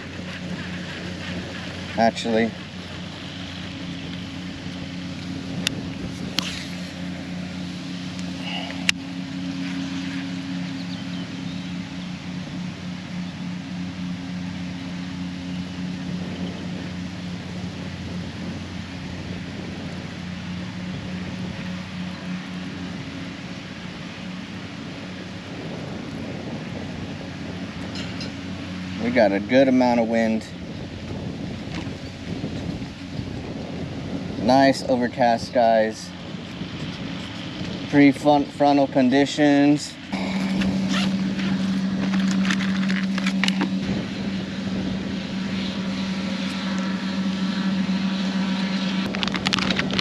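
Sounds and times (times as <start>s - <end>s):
low engine-like hum: 0.0s - 50.0s
wind noise on microphone: 0.0s - 50.0s.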